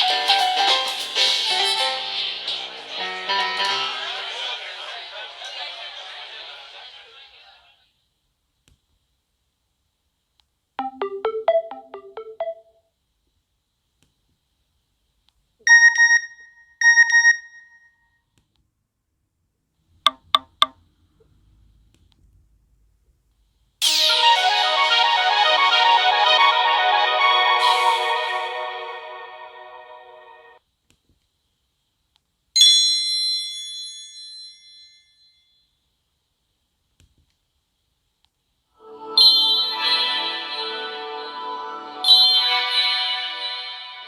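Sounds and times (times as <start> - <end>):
bell-like phone chime: 10.8 - 12.8, 15.7 - 18.0, 27.6 - 28.5
phone rapid high beeps: 15.7 - 17.6.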